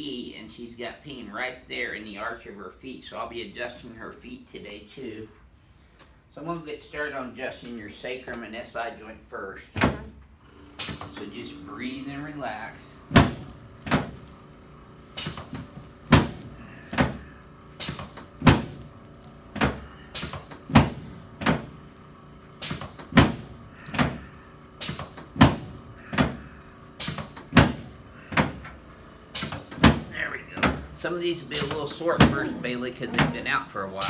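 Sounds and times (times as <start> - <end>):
sharp knocks of chiropractic adjustment: 13.1 - 14.2, 15.4 - 17.2, 23.1 - 24.2.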